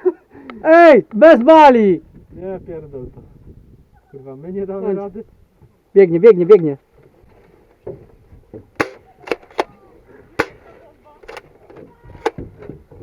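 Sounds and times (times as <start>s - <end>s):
airsoft gun shots: 8.8s - 9.7s, 10.4s - 11.4s.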